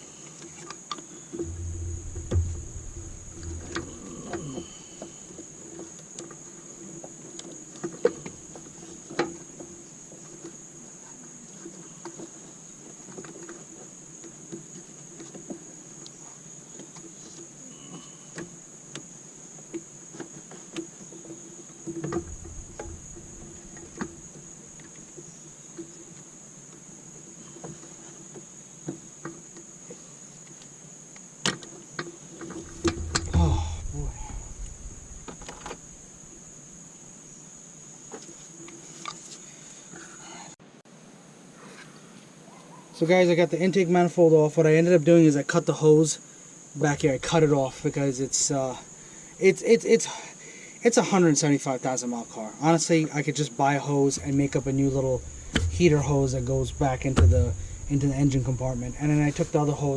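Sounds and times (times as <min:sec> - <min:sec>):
steady high-pitched tone: 0:01.4 - 0:05.0, 0:54.2 - 0:59.9
dull thud: 0:01.4 - 0:05.1, 0:22.1 - 0:24.4, 0:32.6 - 0:36.4, 0:47.0 - 0:48.0, 0:54.2 - 0:59.9.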